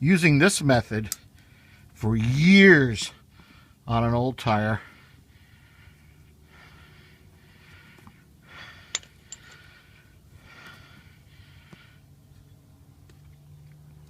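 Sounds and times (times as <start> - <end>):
soft breathing: 3.2 - 3.8, 4.8 - 12.2.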